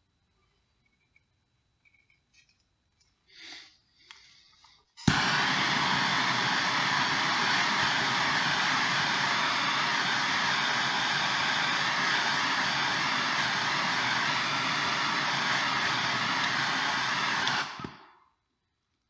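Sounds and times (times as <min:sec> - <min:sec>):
gas torch roaring: 0:05.0 - 0:18.2.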